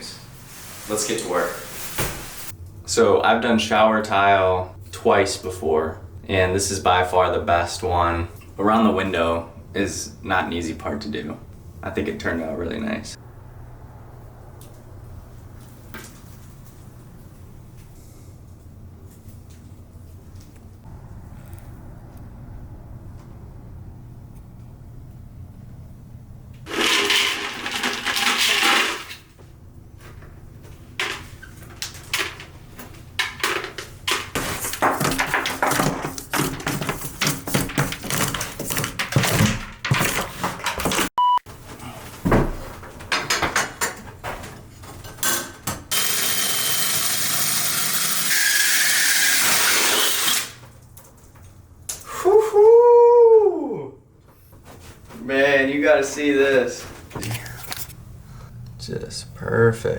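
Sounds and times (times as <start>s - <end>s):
knocks and scrapes: 26.7s - 41.1s.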